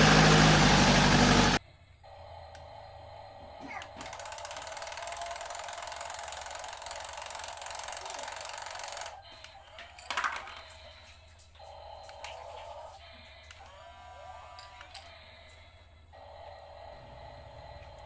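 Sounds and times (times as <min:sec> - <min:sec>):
toy electric motor whirring: 0:03.6 - 0:18.0.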